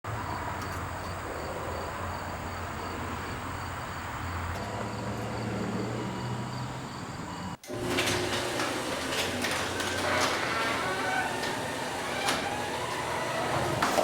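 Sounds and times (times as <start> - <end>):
crickets chirping: 0.1 - 7.6.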